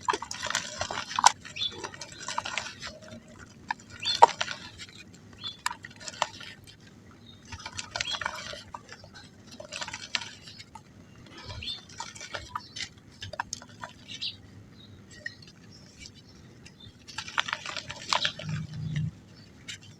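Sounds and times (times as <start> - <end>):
mud crumbling into water: 0.0 - 4.8, 16.8 - 19.1
small wet splashes: 0.0 - 14.4, 15.0 - 19.9.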